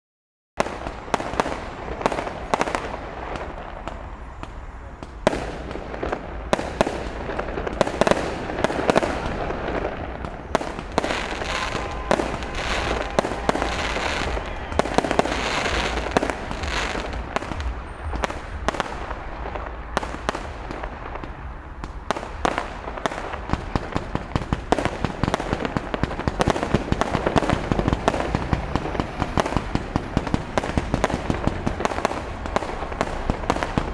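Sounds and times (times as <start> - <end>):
fireworks bangs and crackles: 0.6 - 33.9.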